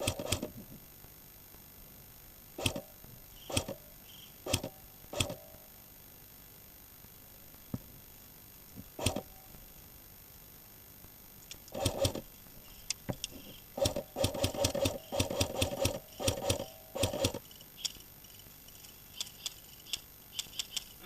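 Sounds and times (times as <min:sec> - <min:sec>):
airsoft rifle firing bursts: 0:11.7 - 0:12.2, 0:13.8 - 0:17.4.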